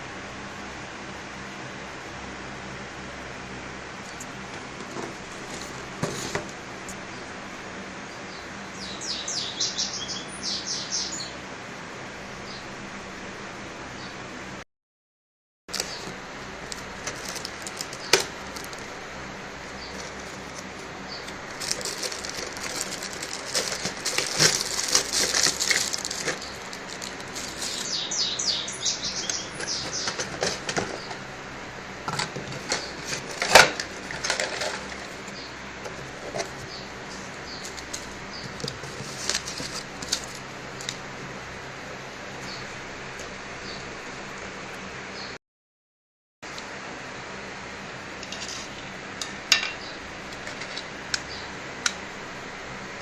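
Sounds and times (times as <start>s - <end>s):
packaging rustling: 4.8s - 6.6s, 15.7s - 19.2s, 19.9s - 28.0s, 29.6s - 31.1s, 32.2s - 35.3s, 35.9s - 41.0s.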